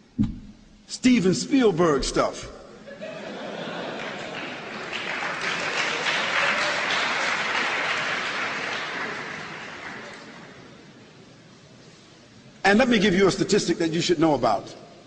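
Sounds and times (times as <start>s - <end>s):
audience applauding: 3.6s - 10.9s.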